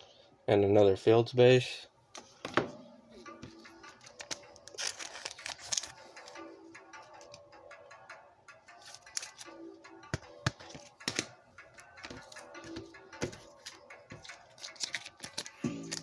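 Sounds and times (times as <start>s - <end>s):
quiet background music: 0.0s - 16.0s
trading cards flipping and clicking: 2.2s - 7.5s, 8.6s - 16.0s.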